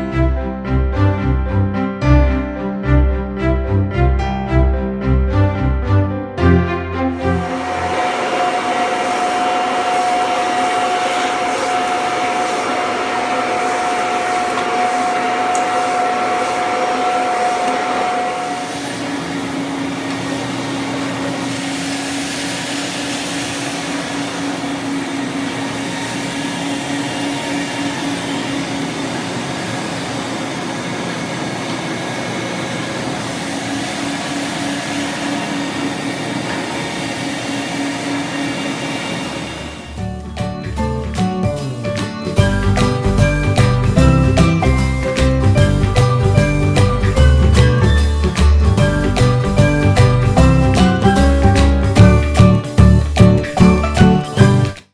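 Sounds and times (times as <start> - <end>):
carpet cleaner suction motor whine: 7.1 - 40.0.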